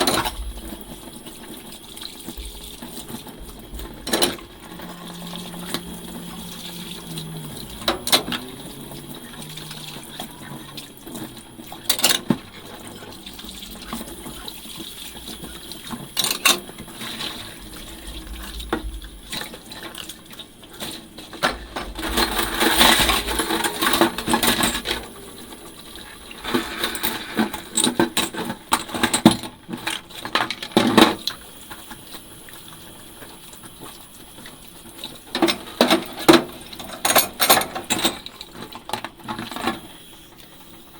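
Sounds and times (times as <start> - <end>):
water running in sink: 0.0 - 40.9
dishes clinking: 3.8 - 14.5, 21.4 - 29.4.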